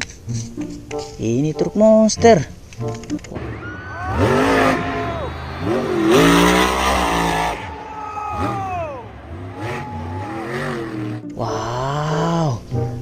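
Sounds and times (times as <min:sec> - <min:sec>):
truck engine revving: 0:03.3 - 0:11.3.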